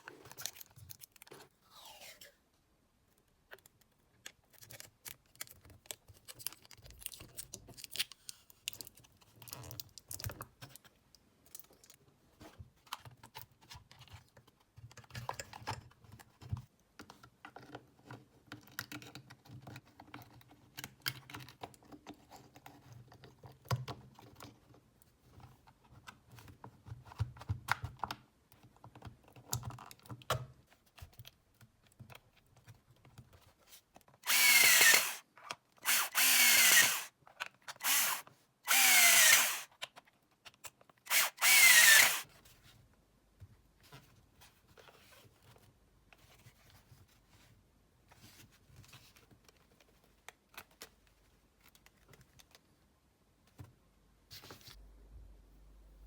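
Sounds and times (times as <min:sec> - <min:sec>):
plastic parts clicking and rattling: 0:00.1 - 0:01.5, 0:03.5 - 0:12.0.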